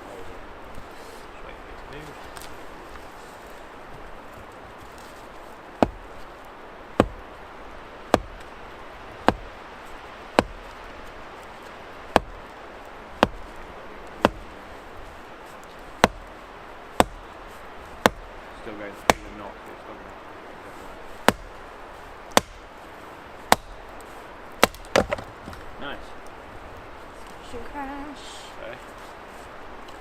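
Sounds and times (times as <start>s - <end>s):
axe splitting log: 5.0s - 6.3s, 6.9s - 7.4s, 8.1s - 8.5s, 9.2s - 9.6s, 10.3s - 10.8s, 12.1s - 12.5s, 13.1s - 13.6s, 14.2s - 14.5s, 15.9s - 18.4s, 19.0s - 19.4s, 21.2s - 21.6s, 22.3s - 22.7s, 23.4s - 25.7s.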